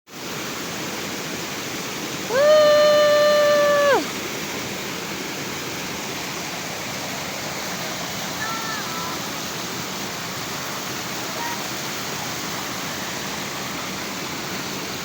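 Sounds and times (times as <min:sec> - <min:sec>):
waterfall rushing: 0:00.2 - 0:15.0
long gliding pitched call: 0:02.3 - 0:04.1.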